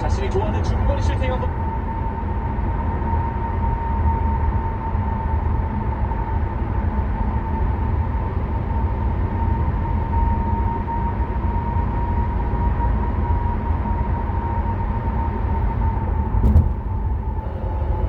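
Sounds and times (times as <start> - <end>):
road and engine rumble: 0.0 - 3.4, 10.7 - 18.0.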